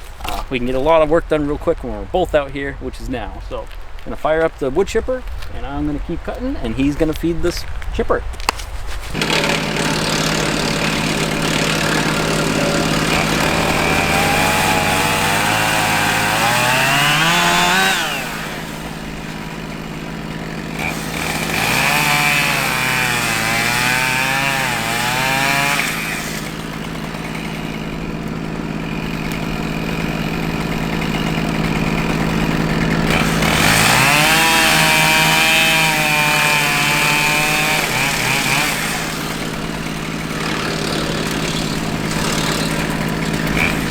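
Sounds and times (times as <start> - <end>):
tractor engine hum: 5.4 - 43.9
chainsaw revving and cutting: 9.0 - 43.9.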